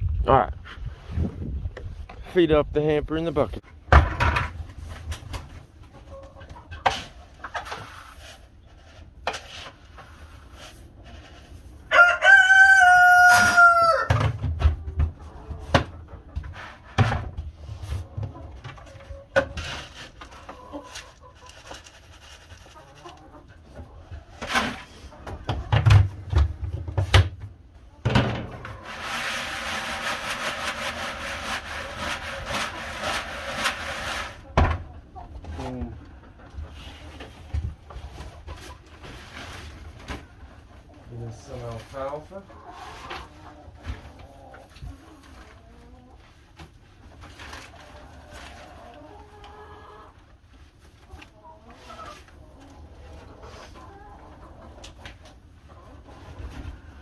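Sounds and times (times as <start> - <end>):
rooster crowing: 11.9 - 14.2.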